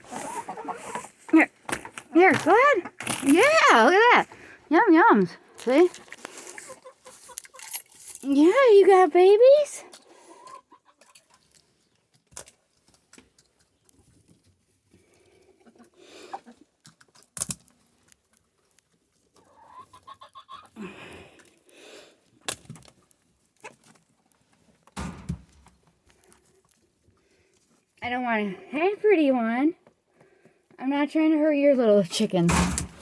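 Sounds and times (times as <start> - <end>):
rustling: 0.0 - 4.5
hens clucking: 0.0 - 5.1, 5.7 - 7.6, 9.9 - 11.5, 19.4 - 20.8.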